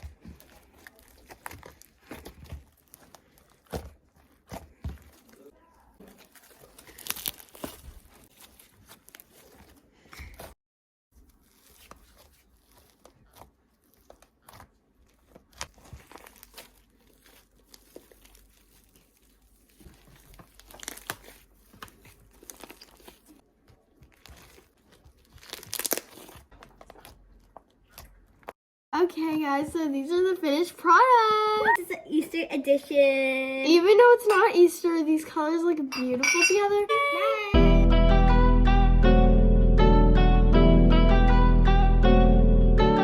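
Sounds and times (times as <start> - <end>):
slime squishing: 0.0 - 10.5, 11.2 - 28.5.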